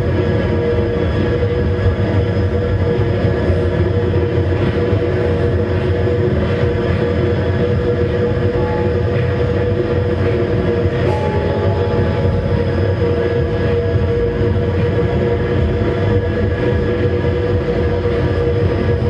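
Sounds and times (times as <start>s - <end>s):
steady held tone: 3.9s - 18.7s.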